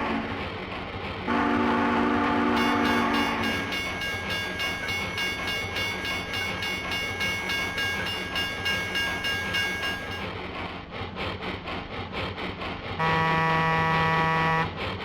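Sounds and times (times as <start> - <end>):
train horn: 0.0 - 0.6, 1.3 - 5.1, 13.0 - 14.9
low rumble of running train: 0.0 - 15.0
bell ringing rapidly: 2.6 - 10.2.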